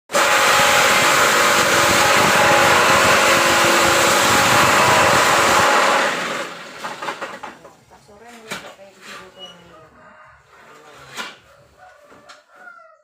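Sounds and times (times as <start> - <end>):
machine winding down: 0.1 - 7.4
block press machine rattling: 0.2 - 7.6.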